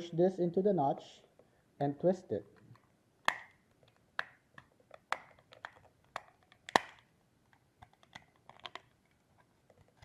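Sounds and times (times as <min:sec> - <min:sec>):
plastic case clicking: 0:02.6 - 0:09.0.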